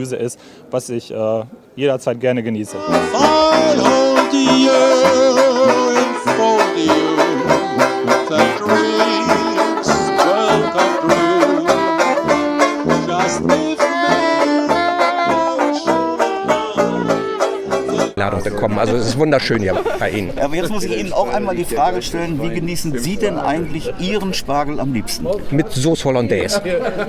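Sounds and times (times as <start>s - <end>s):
upbeat band music: 2.7s - 18.2s.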